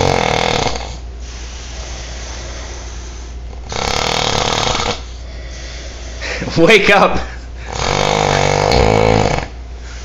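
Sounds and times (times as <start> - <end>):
man snoring loudly: 0.0 - 1.0, 3.6 - 5.1, 7.7 - 9.6
man breathing: 1.2 - 3.5, 5.0 - 6.6, 9.8 - 10.0.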